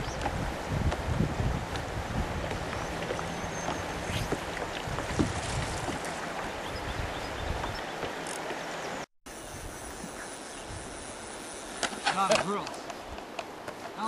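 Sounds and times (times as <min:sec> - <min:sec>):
wind noise on microphone: 0:00.0 - 0:07.9
river water rushing: 0:00.0 - 0:09.0.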